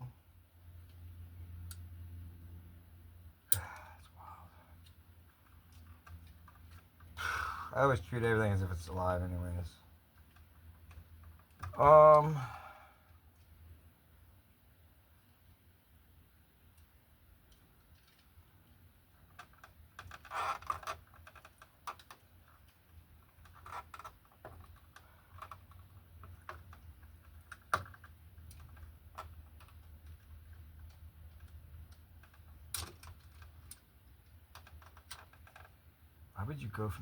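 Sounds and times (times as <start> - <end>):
clicks of plug and wiring: 3.5 - 3.9.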